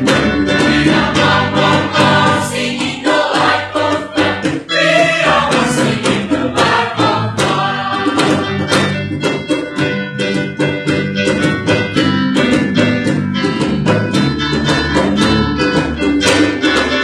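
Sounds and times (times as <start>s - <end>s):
instrumental accompaniment: 0.0s - 17.0s
choir singing: 0.5s - 8.9s.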